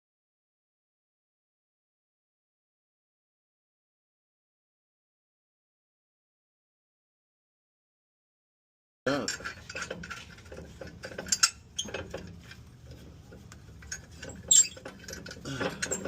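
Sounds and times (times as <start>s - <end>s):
metal tools clinking: 9.1s - 12.6s, 13.7s - 16.0s.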